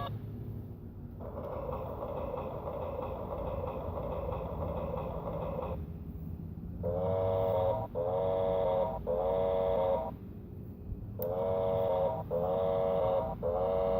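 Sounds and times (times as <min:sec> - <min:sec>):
toy electronic tone: 0:11.3 - 0:13.9.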